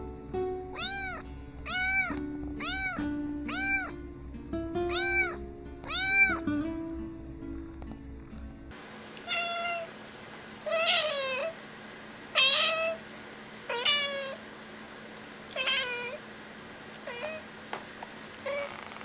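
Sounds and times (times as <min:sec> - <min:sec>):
cat meowing: 0:00.7 - 0:04.0, 0:04.9 - 0:06.5, 0:09.2 - 0:09.9, 0:10.7 - 0:11.6, 0:12.4 - 0:13.0, 0:13.7 - 0:14.4, 0:15.5 - 0:16.2, 0:17.0 - 0:17.5, 0:18.4 - 0:18.8.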